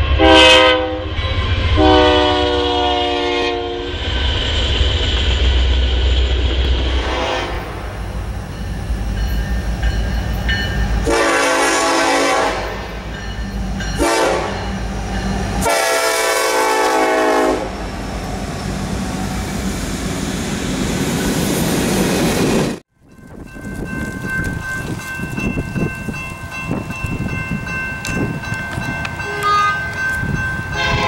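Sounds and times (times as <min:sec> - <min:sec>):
locomotive air horn blasts: 0:00.0 - 0:03.9, 0:06.9 - 0:07.9, 0:11.0 - 0:12.9, 0:14.0 - 0:14.8, 0:15.6 - 0:17.8, 0:29.2 - 0:29.9, 0:30.7 - 0:31.0
low rumble of passing train: 0:00.0 - 0:31.0.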